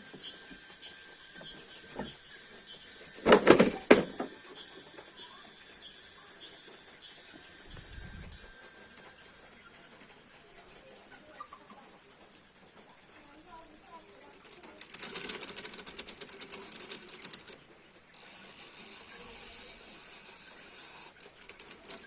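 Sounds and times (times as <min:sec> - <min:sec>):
insects chirring: 0:00.0 - 0:22.0
sharp clicks: 0:14.4 - 0:17.6.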